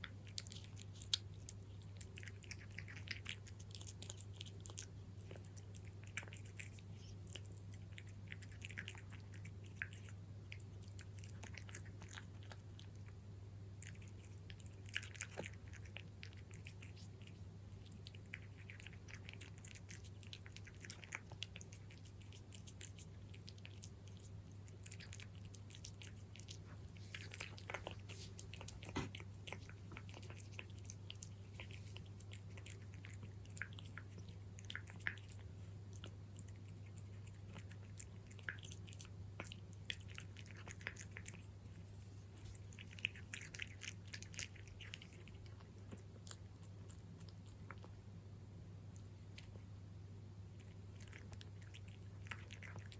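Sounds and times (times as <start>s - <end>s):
cat crunching dry kibble: 0.0s - 48.0s, 50.5s - 52.9s
faint low hum: 0.0s - 52.9s.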